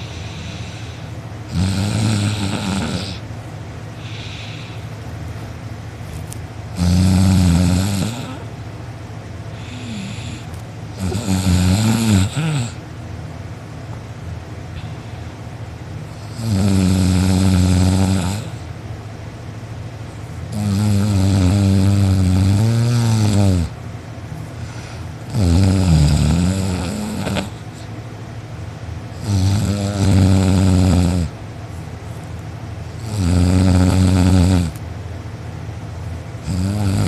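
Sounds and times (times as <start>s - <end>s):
quiet breathing: 0.0s - 1.3s, 3.9s - 5.1s, 9.5s - 10.6s, 24.4s - 25.3s
person snoring loudly: 0.0s - 3.2s, 6.8s - 8.5s, 9.6s - 12.8s, 16.2s - 18.7s, 20.5s - 23.8s, 25.3s - 27.9s, 29.2s - 31.4s, 33.0s - 34.8s, 36.4s - 37.0s.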